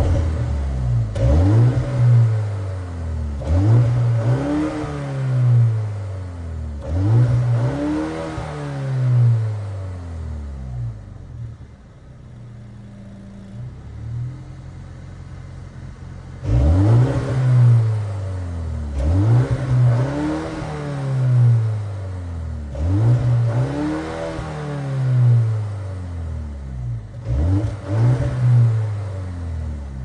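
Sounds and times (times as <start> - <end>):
car engine idling: 0.0 - 4.1, 9.8 - 16.5
car engine revving: 0.0 - 11.0, 12.5 - 30.0.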